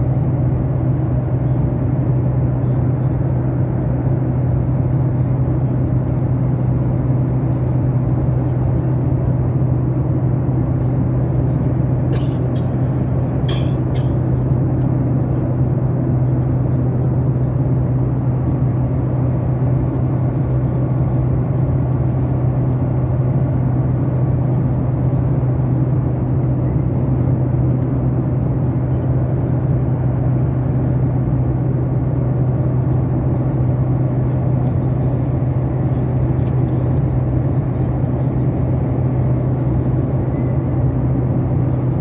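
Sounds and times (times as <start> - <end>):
airliner cabin drone: 0.0 - 42.0.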